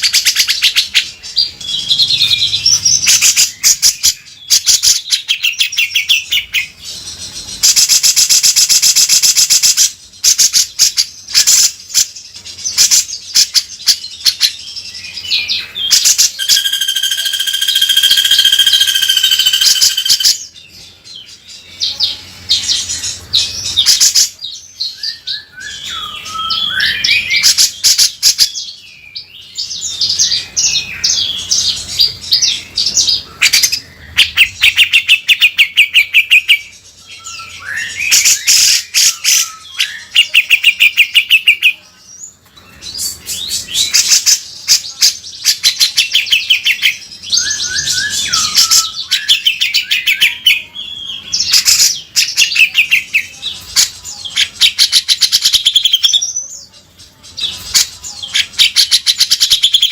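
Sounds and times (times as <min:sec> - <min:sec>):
bird calling with harsh rattles: 0:00.0 - 0:28.7
gliding whistled bird notes: 0:14.9 - 0:20.4, 0:24.9 - 0:27.5, 0:47.3 - 0:51.7.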